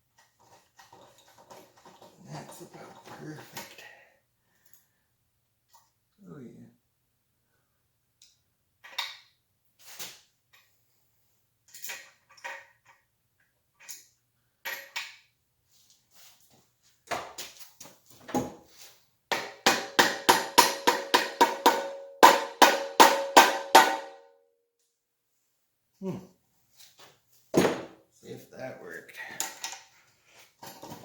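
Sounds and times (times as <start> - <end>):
hammer striking metal: 19.3 - 24.3.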